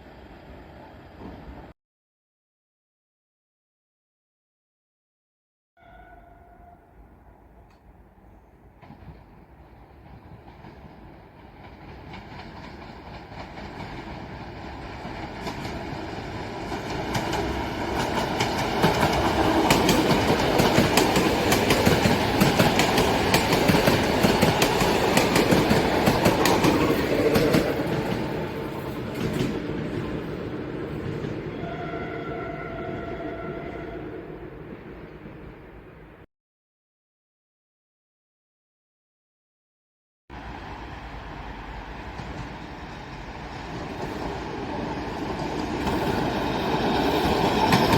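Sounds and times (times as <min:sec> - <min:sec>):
electric train passing: 0:05.8 - 0:36.2, 0:40.4 - 0:47.9
wheels clacking over rail joints: 0:08.8 - 0:31.4.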